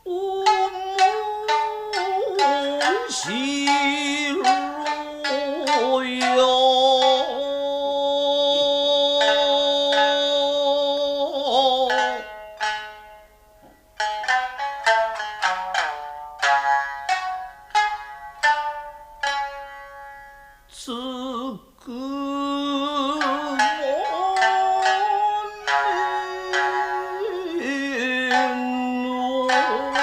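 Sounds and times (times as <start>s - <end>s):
shamisen plucking: 0.0s - 30.0s
long held sliding melodic line: 22.0s - 30.0s.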